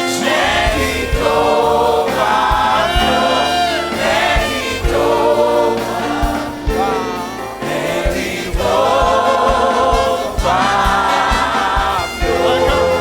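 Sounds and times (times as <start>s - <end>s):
band with low beat: 0.0s - 13.0s
choir singing gospel song: 0.0s - 13.0s.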